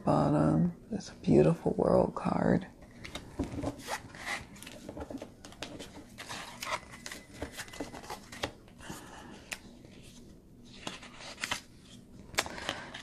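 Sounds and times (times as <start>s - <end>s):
cards rustling: 2.9s - 13.0s.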